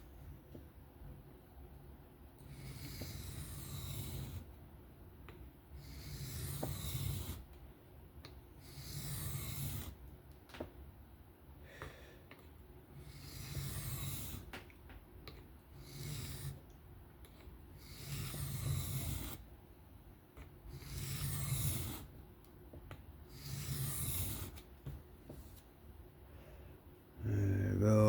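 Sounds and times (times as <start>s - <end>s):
knife rasping on whetstone: 2.4s - 4.5s, 5.8s - 7.4s, 8.6s - 10.0s, 13.0s - 14.5s, 15.8s - 16.6s, 17.8s - 19.4s, 20.7s - 22.1s, 23.3s - 24.6s.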